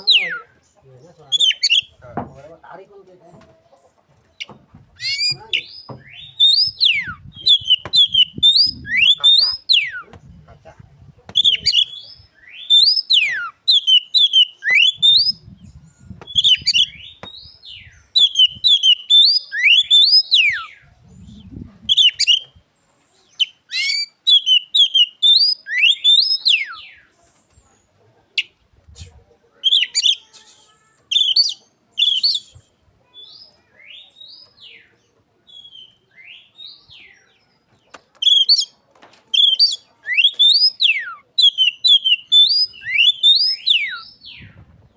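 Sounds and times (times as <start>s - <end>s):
bird singing whistled phrases: 5.0s - 10.1s, 11.4s - 15.4s, 16.3s - 20.8s, 23.4s - 27.0s, 29.7s - 34.5s, 38.2s - 38.7s, 39.4s - 44.5s.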